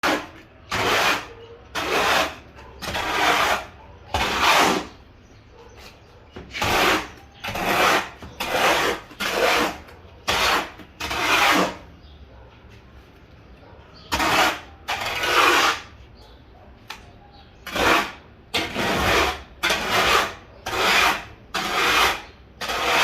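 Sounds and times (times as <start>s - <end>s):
hoe scraping mortar: 0.0s - 5.1s, 5.8s - 12.0s, 14.0s - 16.1s, 17.6s - 23.0s.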